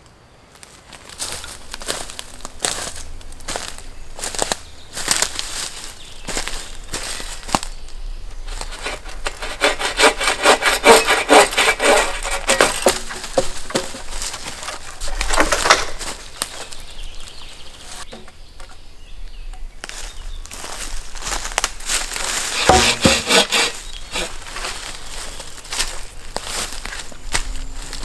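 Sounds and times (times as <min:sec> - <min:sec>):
light scraping: 0:08.3 - 0:18.9, 0:22.2 - 0:24.7
hand saw cutting wood: 0:08.4 - 0:16.2, 0:22.2 - 0:24.4.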